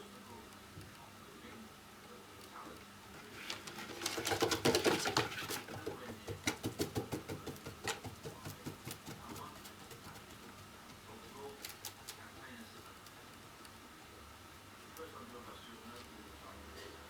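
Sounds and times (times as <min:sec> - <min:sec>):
cat exercise wheel turning: 0:03.1 - 0:14.2.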